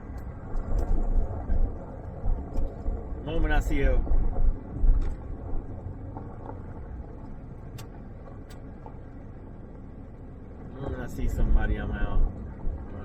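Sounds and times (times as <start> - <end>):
wind on microphone: 0.0 - 7.8
vehicle engine and road rumble: 0.0 - 13.0.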